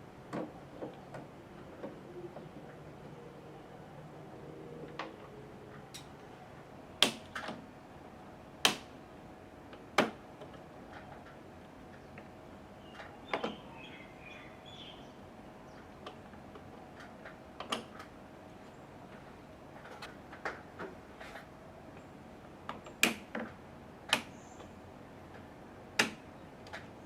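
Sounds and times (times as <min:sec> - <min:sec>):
faint steady hum: 0:00.0 - 0:27.0
bird-like chirps: 0:12.8 - 0:15.8.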